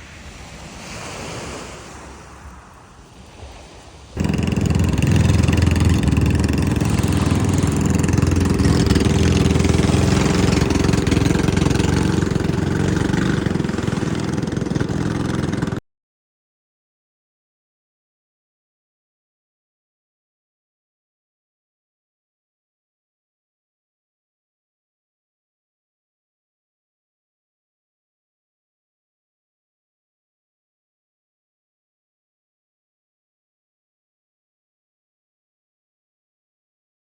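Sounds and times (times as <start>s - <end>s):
quiet surf: 0.0s - 15.8s
wind: 0.0s - 15.8s
engine running with low hum: 4.2s - 15.8s.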